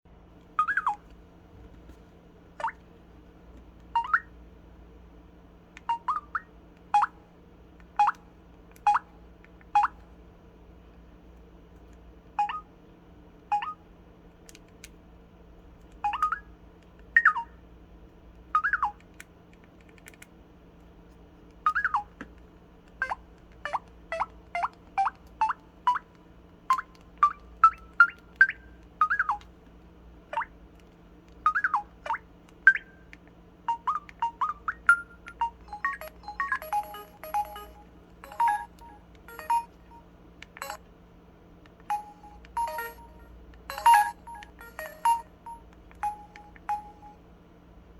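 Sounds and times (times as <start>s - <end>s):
faint steady hum: 0.1s - 47.9s
phone electronic chirps: 0.6s - 1.0s, 4.0s - 4.3s, 12.4s - 12.7s, 13.5s - 13.8s, 16.1s - 16.5s, 33.7s - 40.8s, 41.9s - 47.2s.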